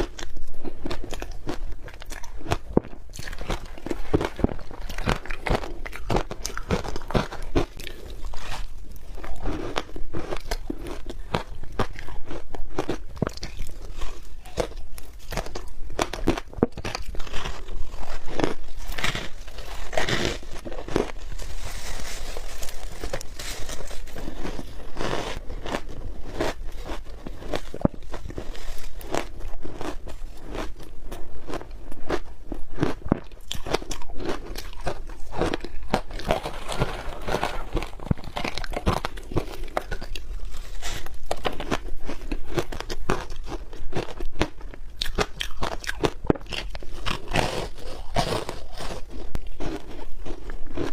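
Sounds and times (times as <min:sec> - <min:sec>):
person chewing crunchy ice: 0:00.0 - 0:50.9.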